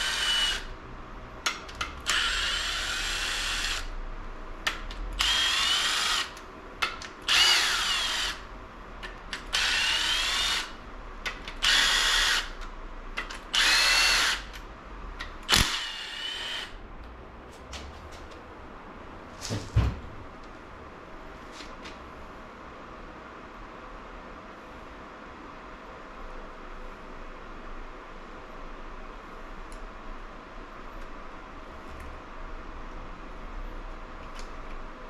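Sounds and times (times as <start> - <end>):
power drill motor whine: 0.0 - 0.7, 2.0 - 3.9, 5.2 - 6.4, 7.3 - 8.4, 9.5 - 10.8, 11.6 - 12.6, 13.5 - 14.5, 15.5 - 16.8.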